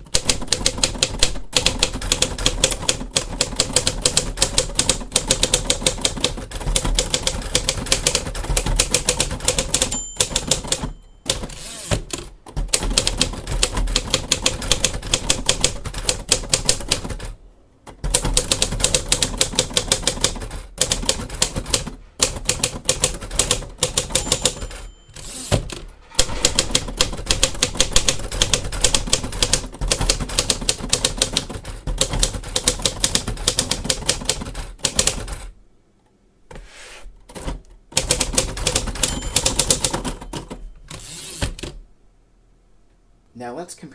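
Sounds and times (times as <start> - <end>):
typewriter key strikes: 0.0 - 17.1, 18.0 - 35.3, 37.3 - 41.7
typewriter margin bell ringing: 9.6 - 11.9, 23.9 - 25.6, 38.8 - 41.4.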